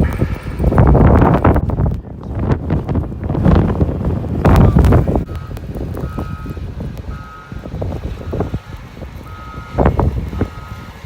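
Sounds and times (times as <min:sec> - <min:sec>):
vehicles rumbling: 0:00.0 - 0:11.0
wind buffeting microphone: 0:00.0 - 0:11.0
truck reversing alarm beeping: 0:04.5 - 0:11.0.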